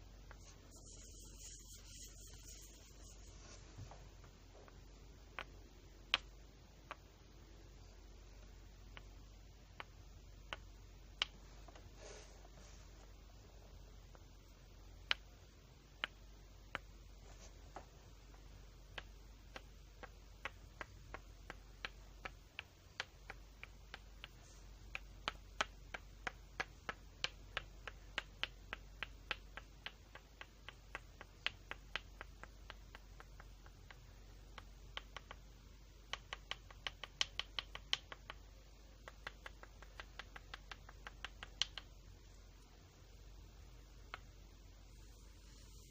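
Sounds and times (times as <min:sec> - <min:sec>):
sharp clicks: 0:36.1 - 0:42.0.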